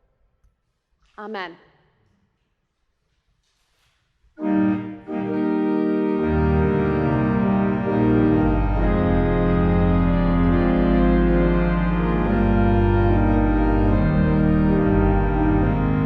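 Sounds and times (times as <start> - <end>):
church organ chords: 4.4 - 16.0
deep organ pedal bass notes: 4.4 - 16.0.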